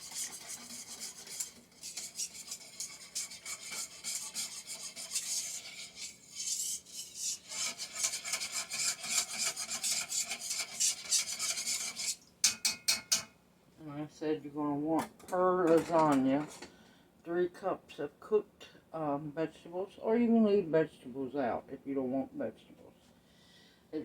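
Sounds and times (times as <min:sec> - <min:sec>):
utensil scraping a wok: 0:00.0 - 0:13.2.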